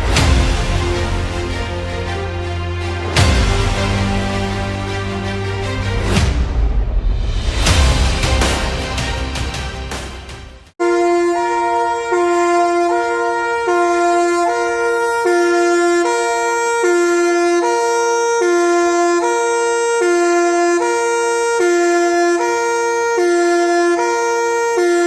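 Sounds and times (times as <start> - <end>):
two-tone horn siren: 10.8 - 25.0.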